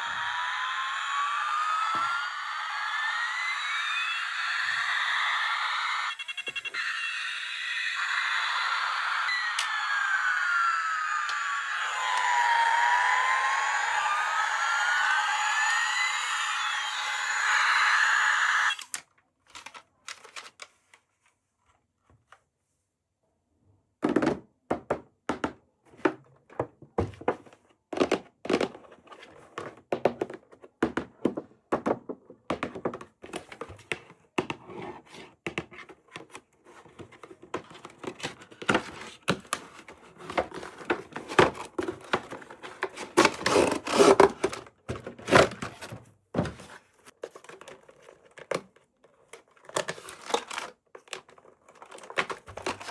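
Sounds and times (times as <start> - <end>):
objects tapping and knocking: 24.0 - 43.5.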